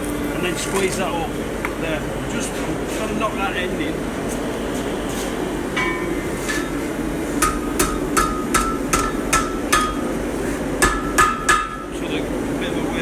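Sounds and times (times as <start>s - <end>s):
hammer striking hot steel: 5.7s - 12.0s.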